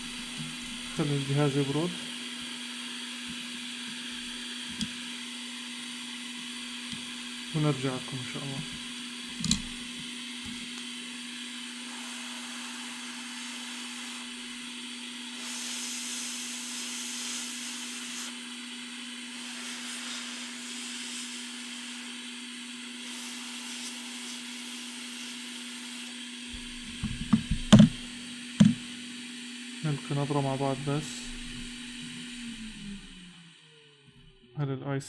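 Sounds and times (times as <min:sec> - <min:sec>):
electric blower humming: 0:00.0 - 0:34.5
knocks on a bench: 0:26.9 - 0:28.0, 0:28.6 - 0:28.8.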